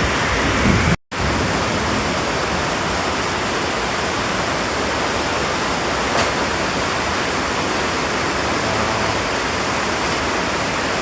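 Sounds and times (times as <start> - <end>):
heavy rain falling: 0.0 - 11.0.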